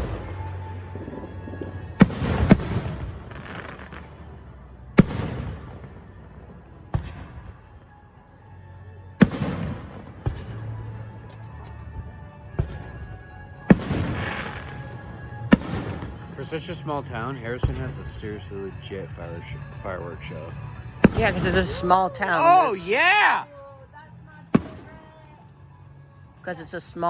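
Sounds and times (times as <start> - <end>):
fireworks crackle: 0.0 - 7.2.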